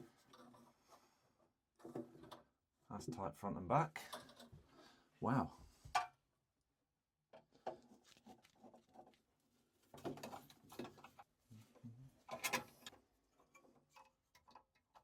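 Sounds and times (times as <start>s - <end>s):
clicks and knocks of parts and tools: 4.0s - 4.6s, 5.9s - 6.2s, 9.9s - 11.3s, 12.3s - 15.0s.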